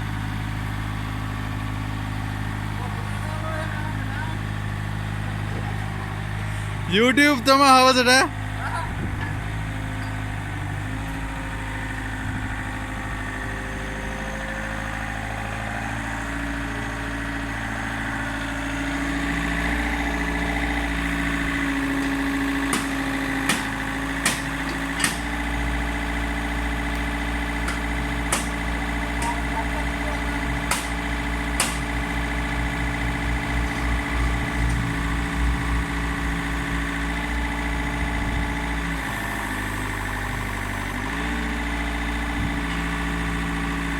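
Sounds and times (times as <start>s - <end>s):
excavator diesel engine running: 0.0s - 43.9s
sharp knocks: 22.0s - 25.4s, 27.6s - 29.4s, 30.6s - 31.0s, 31.6s - 32.0s.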